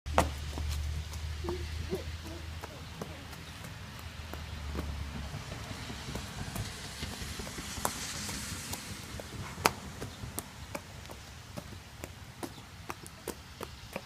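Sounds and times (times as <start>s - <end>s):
raindrops tapping surfaces: 0.1s - 14.0s
rain hiss: 6.4s - 10.7s.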